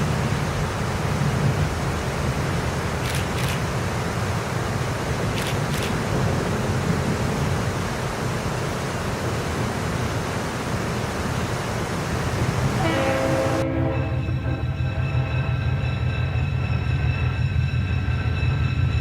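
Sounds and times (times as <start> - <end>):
train rumbling: 0.0 - 19.0
music with held chord: 12.1 - 18.3.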